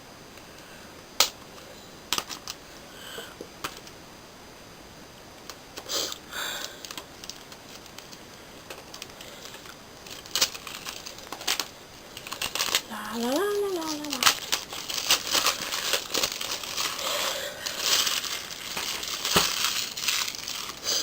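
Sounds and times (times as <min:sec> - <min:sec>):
packaging rustle: 0:06.1 - 0:21.0.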